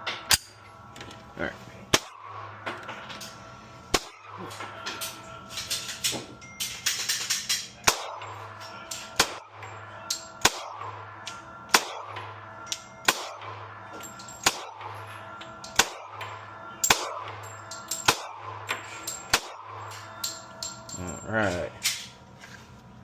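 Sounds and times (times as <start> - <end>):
background music with steady beat: 0.0 - 22.2
gunshot cracks: 7.9 - 8.2.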